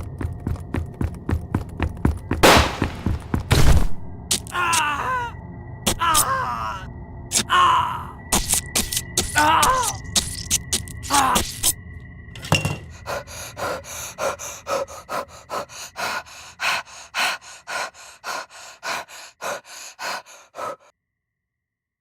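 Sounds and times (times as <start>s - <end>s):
person groaning cry: 4.5s - 8.2s, 9.4s - 10.0s, 11.1s - 11.4s
ragged gasping breaths: 12.8s - 20.9s.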